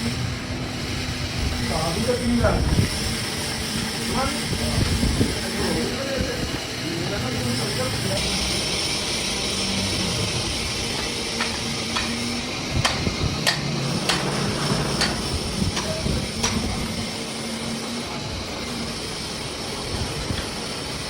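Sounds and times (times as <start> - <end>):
steady hiss: 0.0 - 21.0
tools tapping on metal: 11.0 - 12.2, 12.8 - 16.7.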